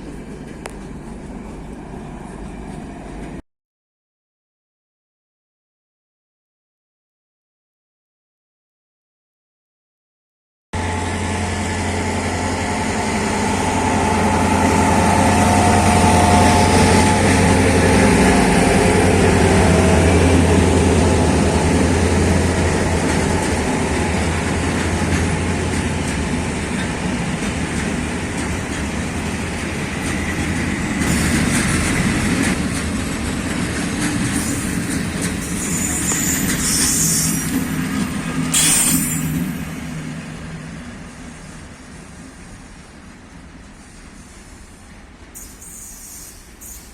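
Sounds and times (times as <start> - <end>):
rail cars rolling: 0.0 - 3.4, 10.8 - 46.9
train engine drone: 0.0 - 3.4, 10.8 - 46.9
high-pitched squeals: 38.6 - 40.1.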